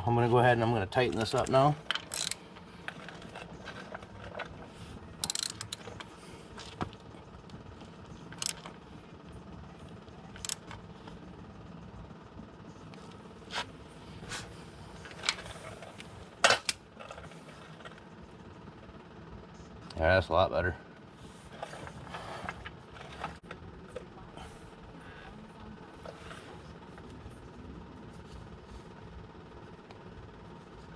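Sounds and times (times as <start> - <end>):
ratchet clicking: 1.9 - 2.4, 5.2 - 5.9, 8.4 - 8.7, 10.4 - 10.7.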